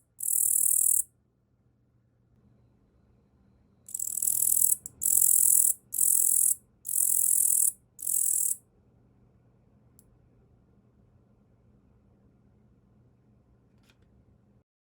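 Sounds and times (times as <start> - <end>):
katydid buzzing song: 0.2 - 1.0, 3.9 - 8.6.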